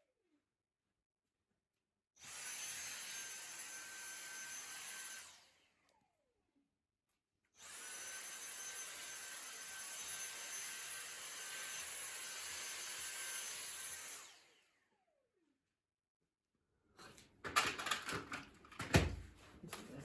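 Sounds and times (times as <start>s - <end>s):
electric motor appliance whining: 2.2s - 6.1s, 7.6s - 15.0s.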